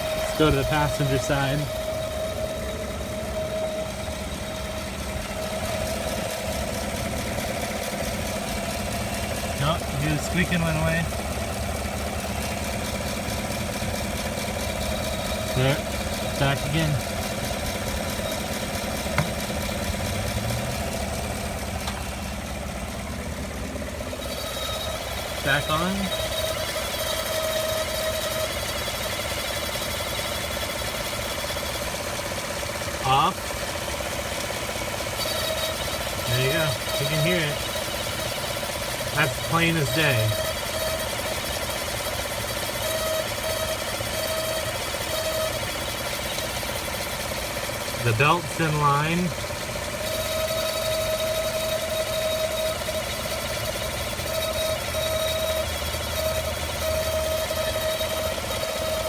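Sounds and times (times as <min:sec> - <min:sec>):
vacuum-like squeaking: 0:00.0 - 0:07.9
pulsing whistling tone: 0:00.0 - 0:11.6, 0:14.8 - 0:21.2, 0:24.1 - 0:28.5, 0:35.2 - 0:41.5, 0:50.1 - 0:59.0
car engine idling: 0:00.0 - 0:59.0.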